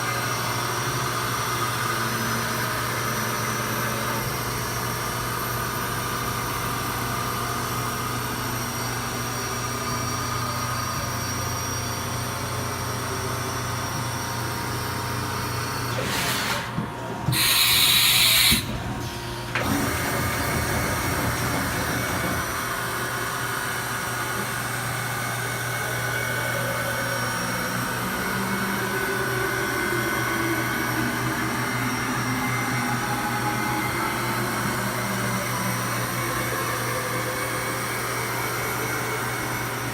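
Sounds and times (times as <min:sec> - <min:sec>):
machine humming: 0:15.1 - 0:39.9.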